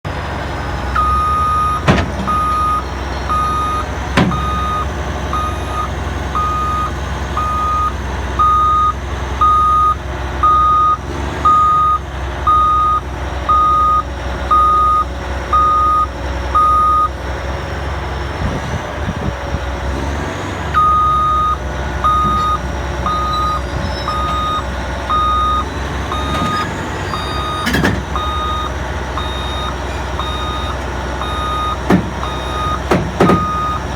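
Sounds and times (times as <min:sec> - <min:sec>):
diesel engine rumble: 0:00.0 - 0:33.9
reversing alarm beeping: 0:00.6 - 0:17.2, 0:20.8 - 0:33.9
thump: 0:01.8 - 0:02.4, 0:04.2 - 0:04.6, 0:31.9 - 0:32.2, 0:32.9 - 0:33.6.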